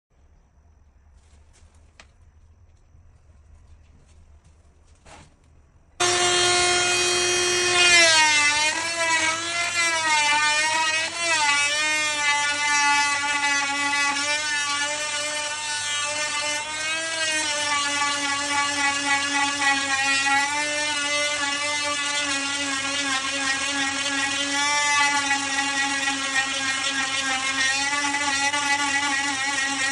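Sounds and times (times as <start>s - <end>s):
electric power tool running: 6.0s - 29.9s.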